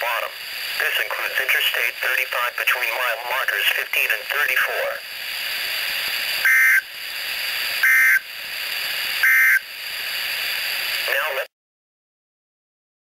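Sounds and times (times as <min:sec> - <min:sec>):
radio hiss: 0:00.0 - 0:11.5
buzzy digital data bursts: 0:06.4 - 0:08.3, 0:09.2 - 0:09.7.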